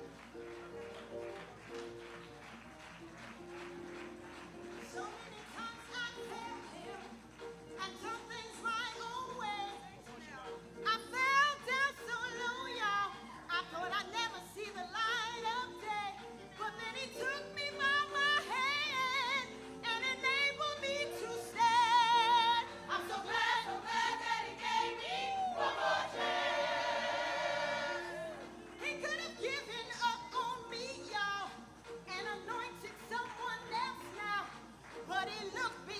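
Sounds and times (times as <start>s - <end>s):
gospel choir singing: 11.5s - 30.8s.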